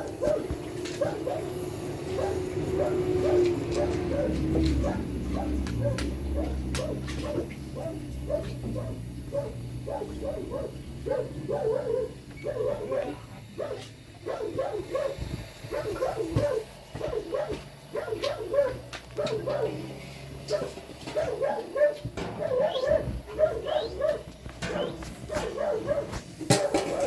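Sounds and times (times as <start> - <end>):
animal crying: 21.2 - 26.1.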